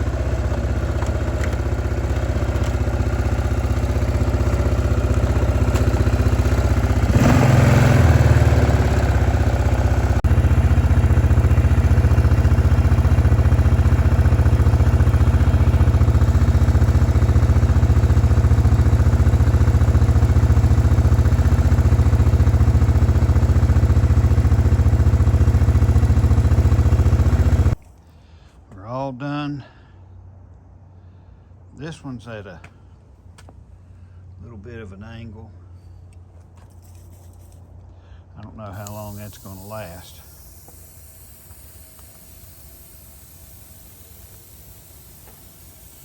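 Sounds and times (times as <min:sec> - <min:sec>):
small engine running: 0:00.0 - 0:28.0, 0:36.6 - 0:38.0, 0:38.6 - 0:46.0.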